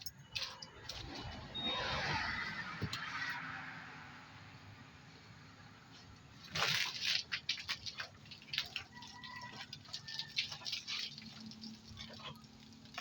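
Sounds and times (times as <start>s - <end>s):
water splashing and dripping: 6.2s - 13.0s
water gushing: 6.5s - 13.0s.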